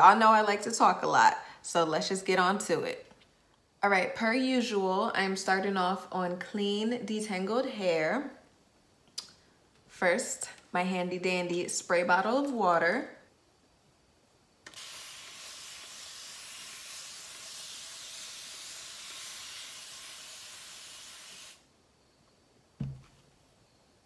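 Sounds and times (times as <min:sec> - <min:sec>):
spray bottle spraying mist: 0:14.7 - 0:21.6
short knock: 0:22.8 - 0:23.2.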